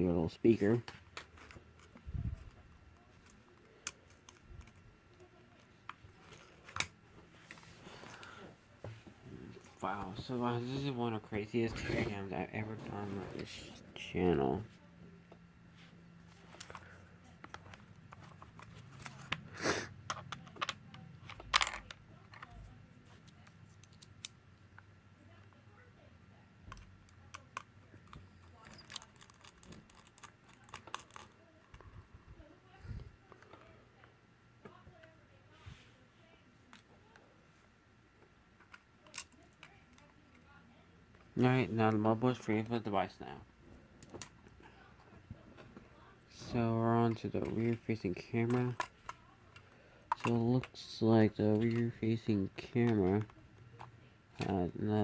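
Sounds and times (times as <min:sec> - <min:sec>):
small tools clicking and tapping: 0:26.7 - 0:31.8.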